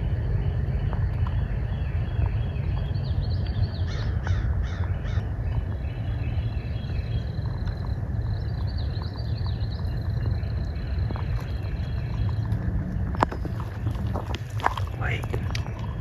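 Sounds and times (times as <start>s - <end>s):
steady low rumble: 0.0s - 16.0s
crows cawing: 3.8s - 5.4s.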